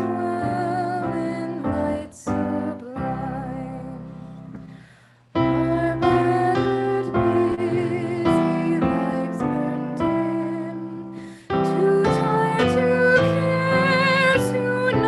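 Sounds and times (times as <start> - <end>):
piano playing sustained chords: 5.4 - 15.0.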